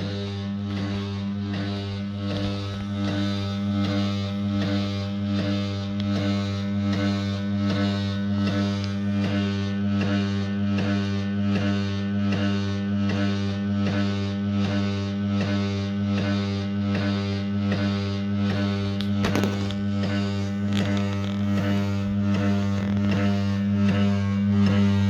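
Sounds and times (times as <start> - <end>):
turntable electrical hum: 0.0 - 25.0.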